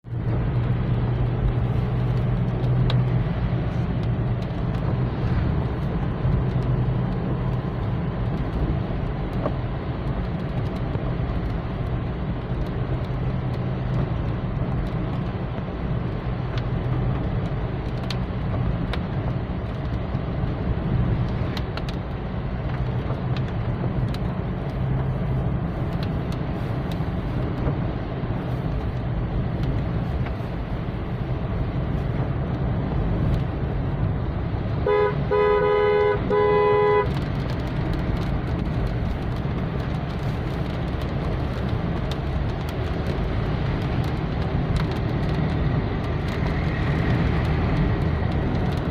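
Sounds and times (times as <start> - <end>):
low engine rumble: 0.0 - 48.9.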